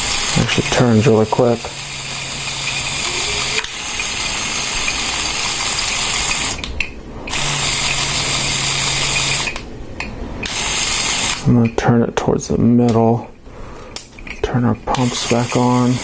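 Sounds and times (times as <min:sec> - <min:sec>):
electric motor whirring through gears: 0:00.0 - 0:06.7, 0:07.3 - 0:09.6, 0:10.4 - 0:11.5, 0:15.0 - 0:16.0.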